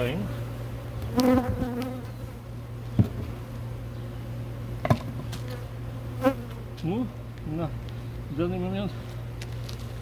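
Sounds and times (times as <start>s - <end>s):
bees buzzing: 0.0s - 10.0s
sharp knocks on hive: 3.0s - 3.3s, 4.8s - 5.4s.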